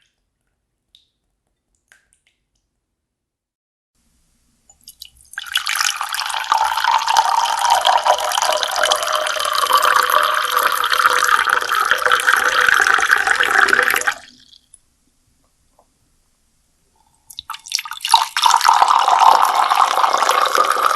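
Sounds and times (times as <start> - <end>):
faint water drips: 4.7 - 12.2, 17.0 - 20.3
water pouring in a stream: 4.9 - 14.6, 17.3 - 20.9.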